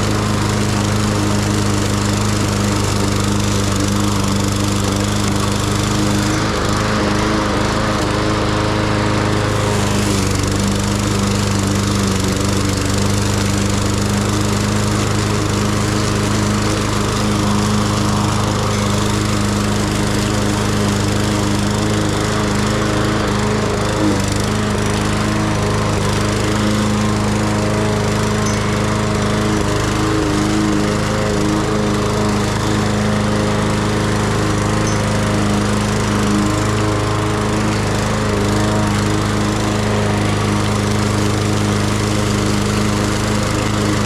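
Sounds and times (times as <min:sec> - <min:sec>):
lawn mower engine running: 0:00.0 - 0:44.0.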